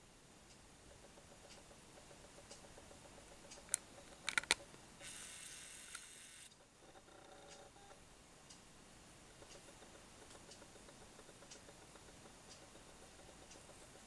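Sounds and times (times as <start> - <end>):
small motor whirring: 5.0 - 7.6.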